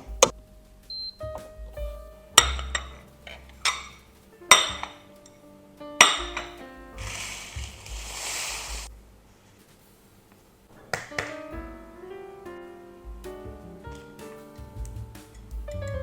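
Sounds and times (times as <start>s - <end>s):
soft background music: 0.0s - 9.0s, 11.1s - 16.0s
even hiss: 0.0s - 16.0s
dishes clinking: 2.4s - 5.0s, 6.0s - 6.6s.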